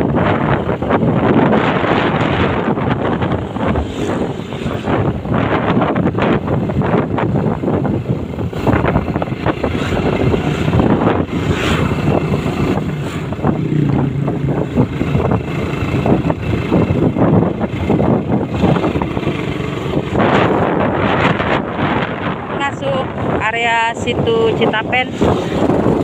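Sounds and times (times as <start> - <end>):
wind buffeting microphone: 0.0 - 26.0
vehicle engine running: 6.0 - 22.3.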